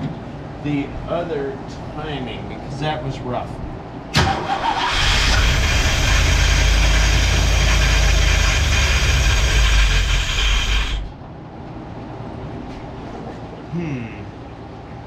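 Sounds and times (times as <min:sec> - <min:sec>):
car engine running loudly: 0:04.6 - 0:11.1.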